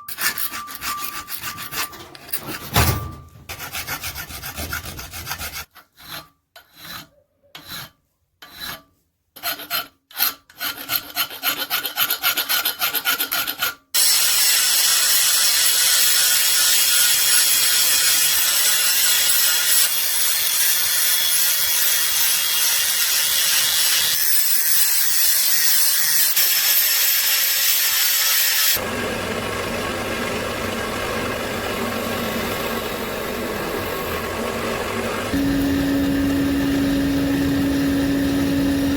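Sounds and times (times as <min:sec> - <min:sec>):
metal file rasping: 0:00.0 - 0:28.8
loud grinding noise: 0:14.0 - 0:38.9.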